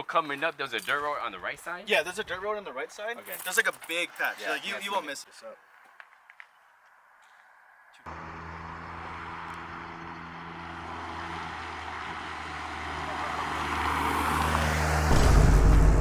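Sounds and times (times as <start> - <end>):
heavy bass hit: 14.1 - 16.0.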